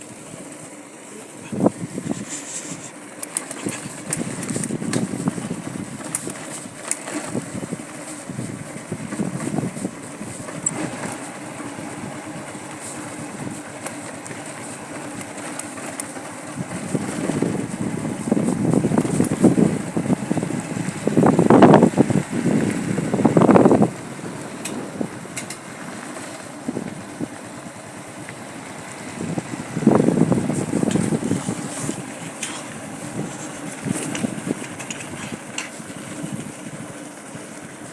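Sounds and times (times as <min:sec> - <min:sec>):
engine running with rumbling: 0:00.0 - 0:37.9
scattered clicks: 0:02.2 - 0:05.3, 0:25.4 - 0:25.6.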